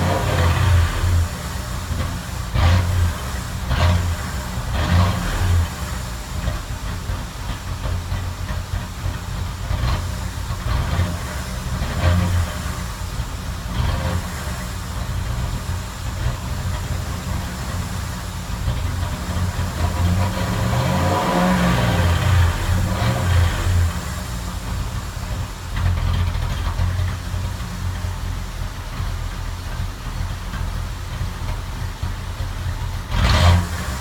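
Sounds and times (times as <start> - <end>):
car engine running: 0.0 - 34.0.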